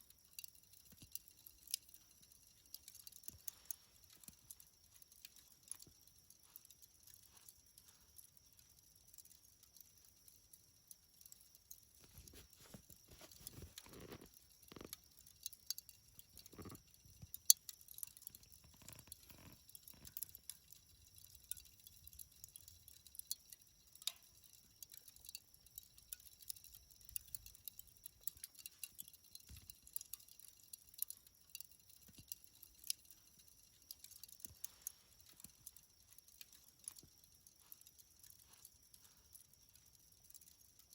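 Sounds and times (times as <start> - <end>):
charcoal fire crackling: 0.0 - 40.9.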